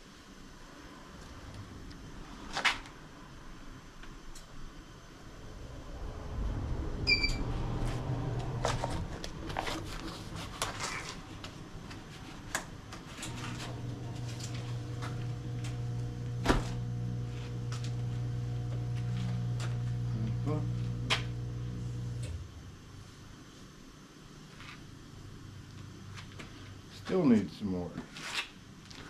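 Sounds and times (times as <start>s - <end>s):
wheel balancer humming: 5.3s - 23.0s
short beep: 7.1s - 7.4s.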